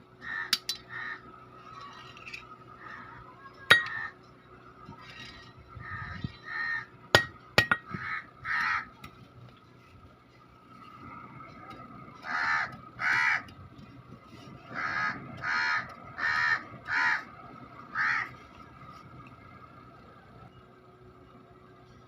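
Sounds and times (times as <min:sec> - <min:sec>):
crow cawing: 0:00.2 - 0:01.3, 0:05.8 - 0:06.9, 0:07.9 - 0:08.9, 0:12.2 - 0:13.5, 0:14.7 - 0:17.3, 0:17.9 - 0:18.4.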